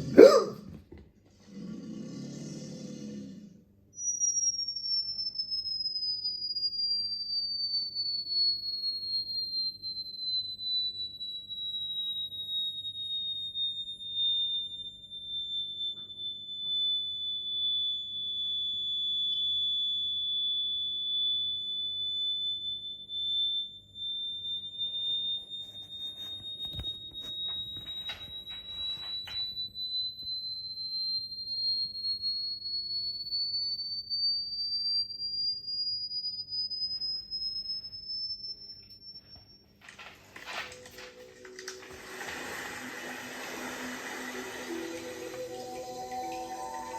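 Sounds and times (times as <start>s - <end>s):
gliding electronic sine tone: 40.4s - 46.9s.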